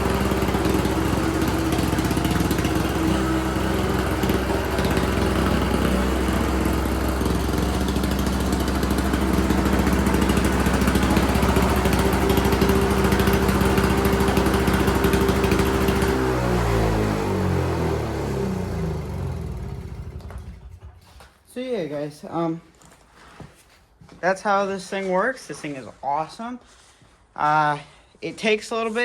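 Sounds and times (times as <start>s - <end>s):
snowblower engine running: 0.0s - 21.1s.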